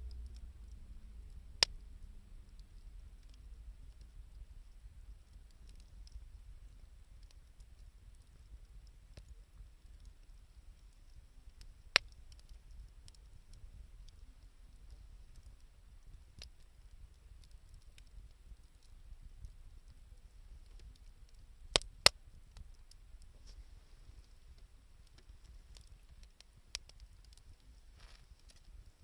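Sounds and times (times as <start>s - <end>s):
low rumble: 0.0s - 4.0s
sharp pops of fire: 0.0s - 4.4s, 21.7s - 23.6s, 25.0s - 29.0s
wood fire crackling: 0.0s - 29.0s.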